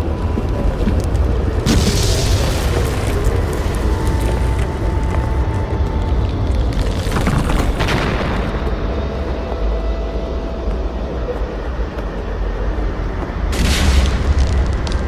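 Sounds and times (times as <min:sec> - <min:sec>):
low explosion rumble: 0:00.0 - 0:09.8, 0:13.3 - 0:15.0
sharp noisy burst: 0:13.5 - 0:15.0.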